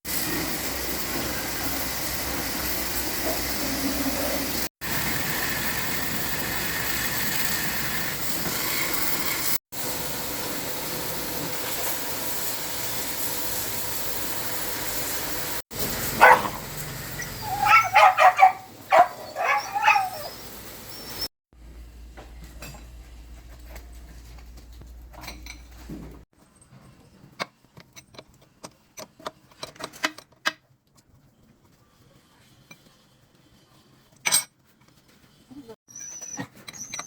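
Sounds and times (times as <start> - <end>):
dog yelping: 16.2 - 21.3, 35.9 - 37.0.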